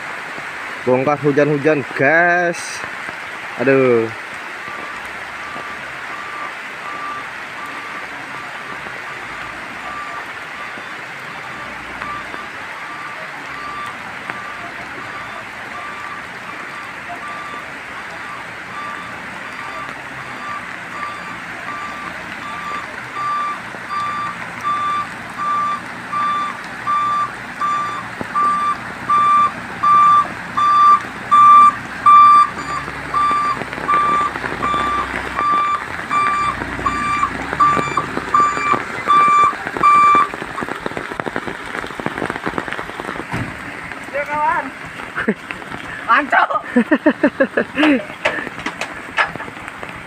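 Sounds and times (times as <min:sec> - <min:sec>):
rain hissing: 0:00.0 - 0:50.0
truck reversing alarm beeping: 0:04.6 - 0:40.7.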